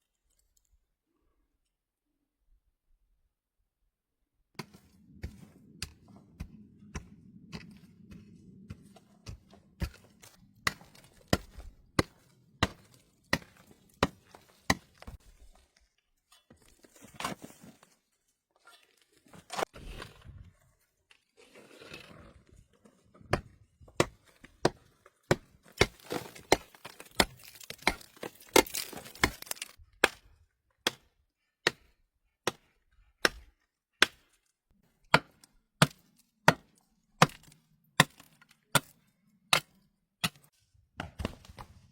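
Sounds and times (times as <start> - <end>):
axe chopping wood: 9.2 - 15.2, 23.3 - 34.3, 35.1 - 40.4, 41.0 - 41.7.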